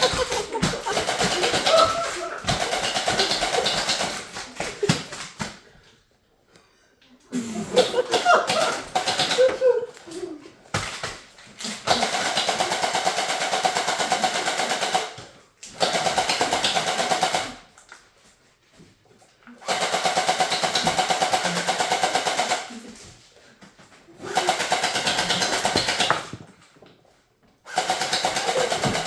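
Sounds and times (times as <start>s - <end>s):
gel blaster firing full auto: 0.0s - 4.4s, 11.9s - 15.2s, 27.7s - 29.0s.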